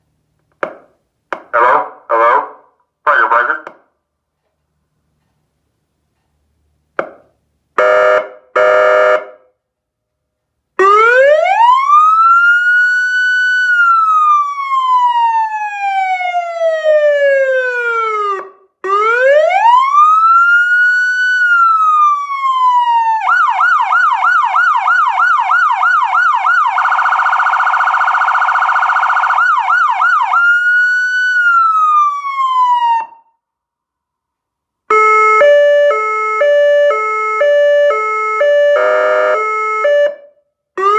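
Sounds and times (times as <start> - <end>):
electronic ambulance siren: 10.8 - 33.3, 34.9 - 40.9.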